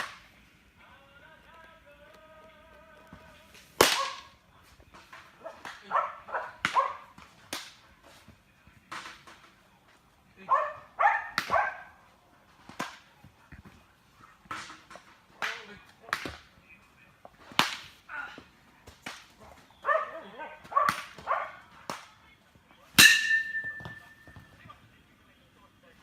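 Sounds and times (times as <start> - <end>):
sharp cracks of ball: 3.6 - 4.3, 6.6 - 7.8, 11.3 - 11.6, 17.5 - 18.0, 20.6 - 22.2.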